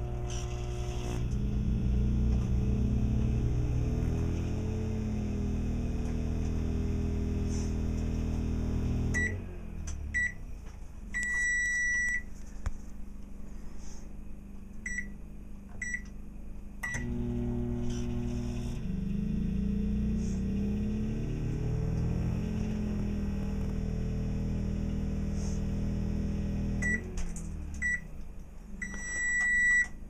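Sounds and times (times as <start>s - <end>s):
microwave oven humming: 0.0s - 30.0s
long beep: 11.2s - 12.3s
short electronic beeps: 28.8s - 30.0s.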